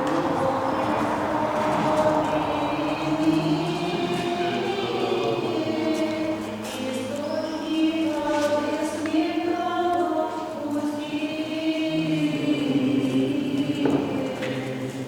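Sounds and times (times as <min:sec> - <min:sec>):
choir singing sustained chant: 0:00.0 - 0:15.0.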